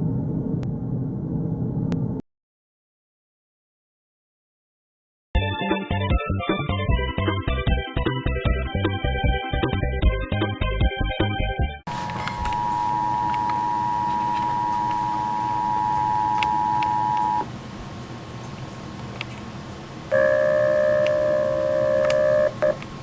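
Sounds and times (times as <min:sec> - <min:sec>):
two-tone alert signal: 0:11.9 - 0:17.4, 0:20.1 - 0:22.8
low steady tone: 0:11.9 - 0:17.5, 0:20.1 - 0:22.8.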